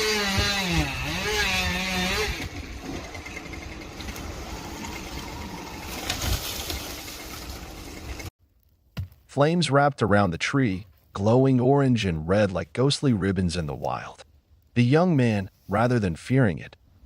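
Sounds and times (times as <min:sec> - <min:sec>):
chainsaw revving: 0:00.0 - 0:05.8.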